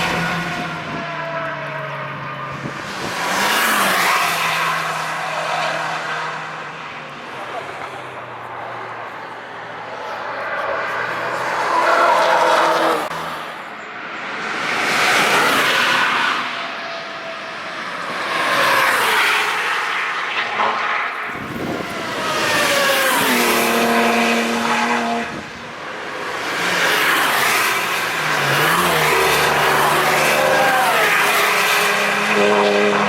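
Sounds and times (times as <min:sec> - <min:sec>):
cars passing at speed: 0:00.0 - 0:33.0.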